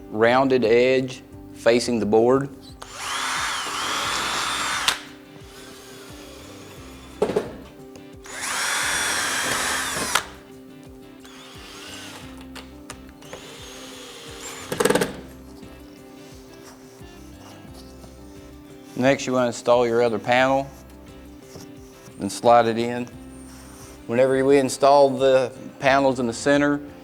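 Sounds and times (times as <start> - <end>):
power drill whining: 2.8 - 10.5, 11.2 - 24.8.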